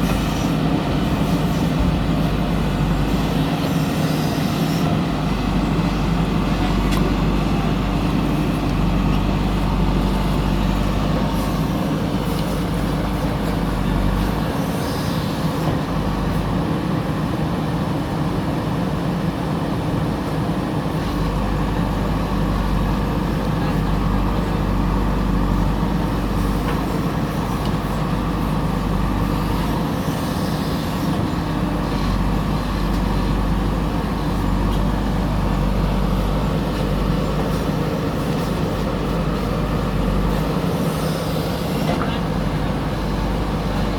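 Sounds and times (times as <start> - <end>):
backhoe diesel engine running: 0.0 - 43.9.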